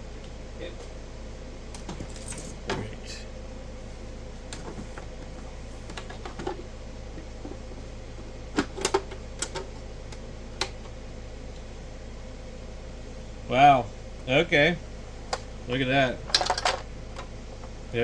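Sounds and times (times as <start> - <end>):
metal parts clicking and knocking: 16.3 - 16.8.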